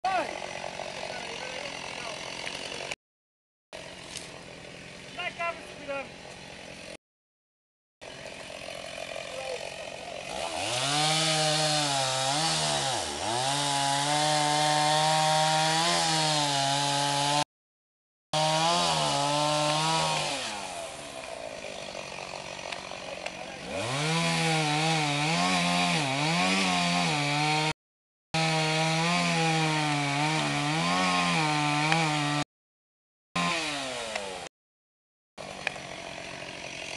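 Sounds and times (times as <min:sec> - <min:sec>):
chainsaw cutting wood: 0:00.1 - 0:03.0, 0:03.8 - 0:07.0, 0:08.0 - 0:17.5, 0:18.4 - 0:27.8, 0:28.4 - 0:32.5, 0:33.4 - 0:34.5, 0:35.4 - 0:36.9
chainsaw idling: 0:00.1 - 0:03.0, 0:03.8 - 0:07.0, 0:08.0 - 0:16.2, 0:18.4 - 0:26.8, 0:35.4 - 0:36.9.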